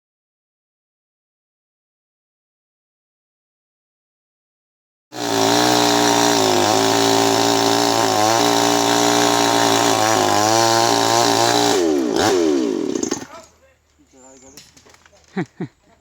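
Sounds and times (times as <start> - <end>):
chainsaw running: 5.1 - 13.6.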